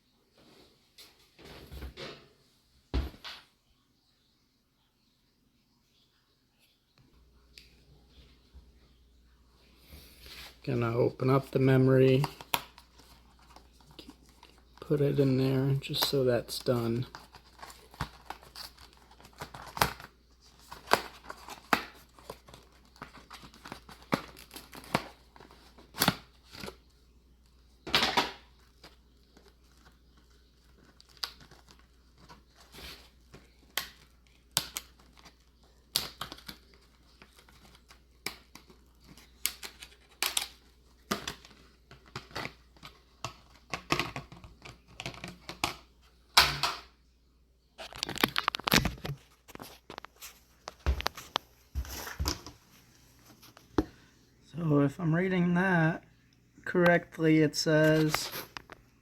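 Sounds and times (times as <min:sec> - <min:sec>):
plastic packaging crackling: 0:10.6 - 0:45.8, 0:47.7 - 0:52.5.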